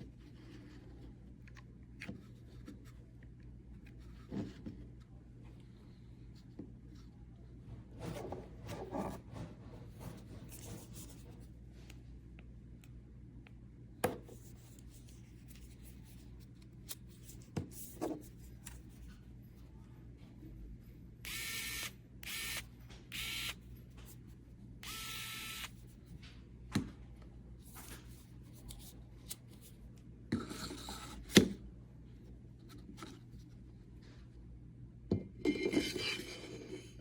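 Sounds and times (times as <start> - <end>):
low steady hum: 0.0 - 37.0
tools rubbing and scraping: 8.0 - 11.5.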